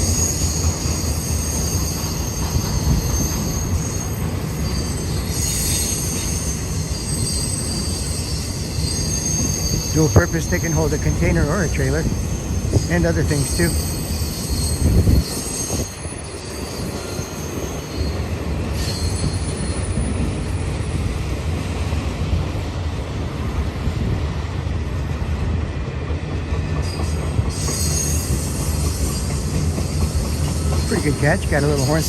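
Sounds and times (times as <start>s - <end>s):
high-pitched wheel squeal: 0.0s - 10.6s, 12.7s - 20.6s, 27.0s - 32.0s
train wheels rumbling on rail: 0.0s - 32.0s.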